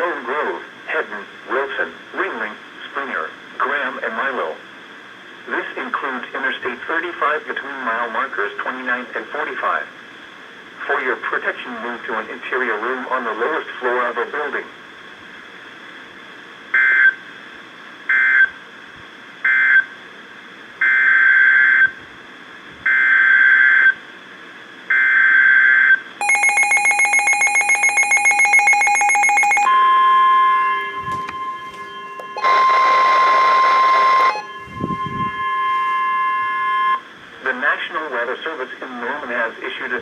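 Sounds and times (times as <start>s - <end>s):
steady warning alarm tone: 24.9s - 37.1s
radio alert data bursts: 26.2s - 29.7s
rapid beeping alert: 26.2s - 29.8s.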